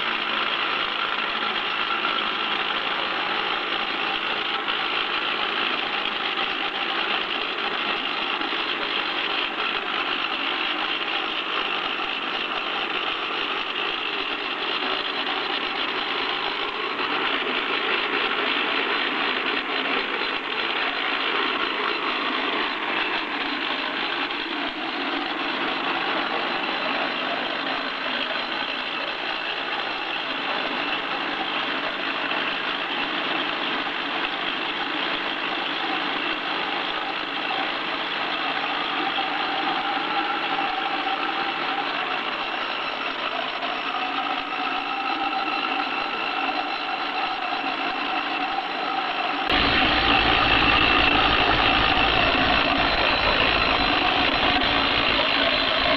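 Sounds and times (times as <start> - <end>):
handheld rock drill running: 49.5 - 55.9.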